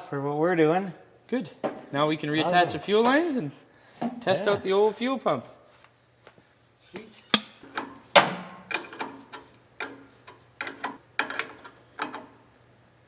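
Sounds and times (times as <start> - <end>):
metal tools clinking and knocking: 6.9 - 12.3.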